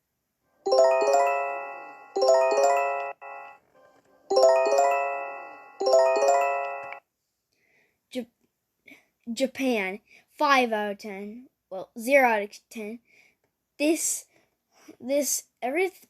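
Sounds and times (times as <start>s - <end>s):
bell-like alert chime: 0.7s - 3.6s, 4.2s - 7.0s.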